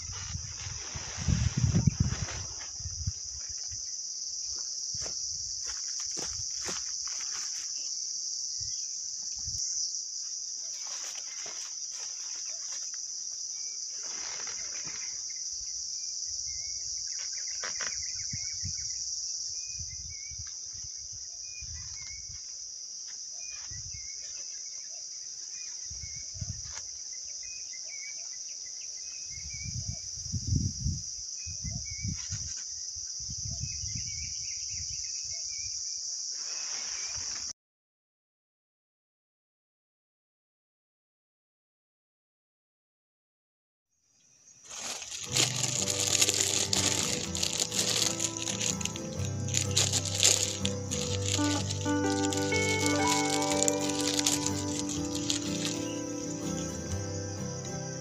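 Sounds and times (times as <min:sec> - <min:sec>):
night insects chorus: 0:00.0 - 0:37.5, 0:44.2 - 0:58.0
short insect chirps: 0:44.2 - 0:58.0.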